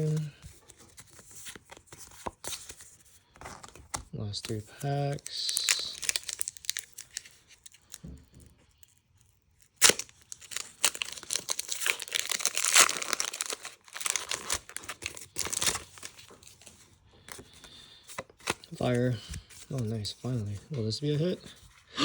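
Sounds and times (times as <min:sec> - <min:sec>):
foil wrapper ripping: 0:05.3 - 0:08.0, 0:08.8 - 0:16.4
foil crackling and rustling: 0:09.6 - 0:16.8.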